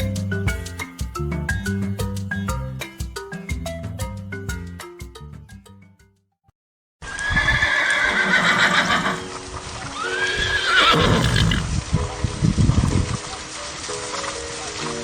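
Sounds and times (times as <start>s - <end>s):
horse neighing: 7.0s - 9.3s, 10.0s - 11.7s.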